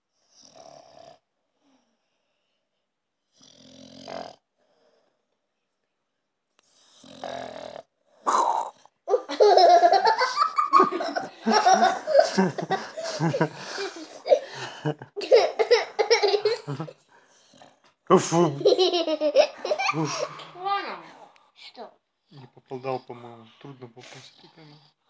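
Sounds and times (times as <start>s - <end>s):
dog snoring: 0.1s - 1.2s, 3.2s - 5.1s, 6.6s - 8.9s
person laughing loudly: 9.2s - 17.0s, 18.1s - 20.5s.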